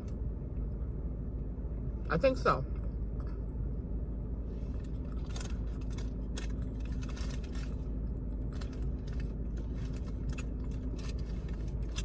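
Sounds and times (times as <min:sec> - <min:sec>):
steady low hum: 0:00.0 - 0:12.0
clicks and crinkles of handling: 0:04.7 - 0:12.0.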